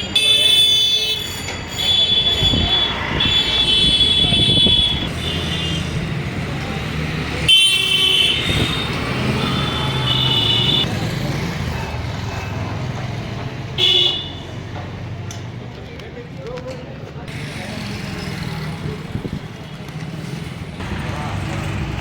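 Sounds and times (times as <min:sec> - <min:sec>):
vehicle horns honking: 0:00.0 - 0:06.2, 0:07.4 - 0:10.9, 0:13.8 - 0:14.5
traffic engine rumble: 0:00.0 - 0:22.0
voices: 0:00.0 - 0:22.0.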